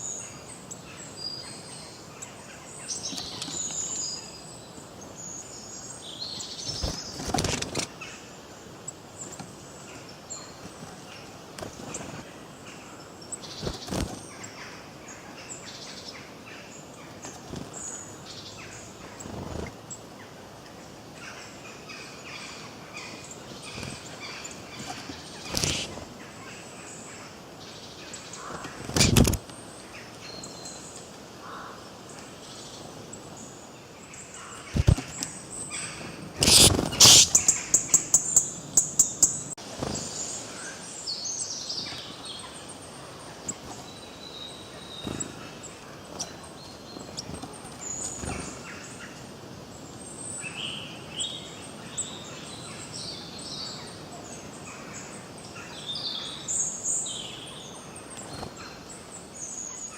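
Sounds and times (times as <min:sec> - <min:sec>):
birds chirping and singing: 0:00.0 - 0:08.2, 0:21.3 - 0:27.1, 0:32.5 - 0:59.9
steady background hiss: 0:00.0 - 0:59.9.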